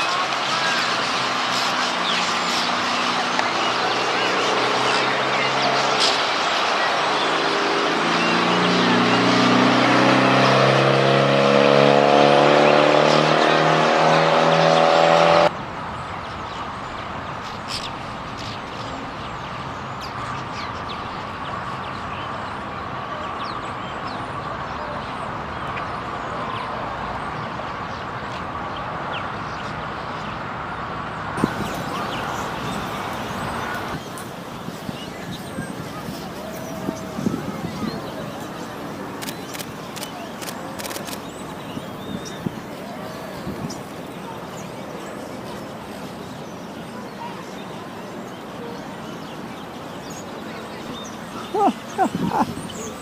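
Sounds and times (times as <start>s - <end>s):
flock of birds chirping: 0.0s - 11.6s, 12.2s - 53.0s
vehicle engine accelerating: 0.1s - 15.6s, 31.4s - 42.5s.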